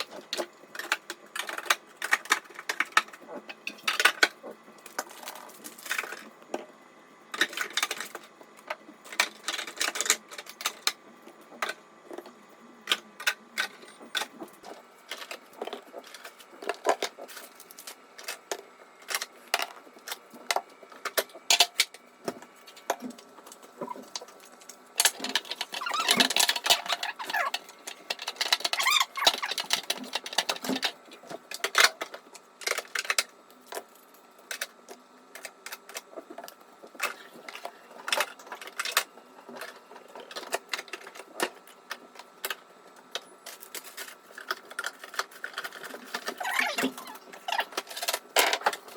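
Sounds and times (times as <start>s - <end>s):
containers clicking and clattering: 11.6s - 33.8s, 34.4s - 48.9s.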